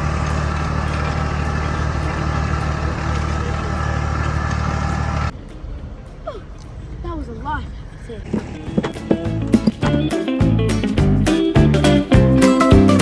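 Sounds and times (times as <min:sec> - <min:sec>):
engine running under load: 0:00.0 - 0:05.3.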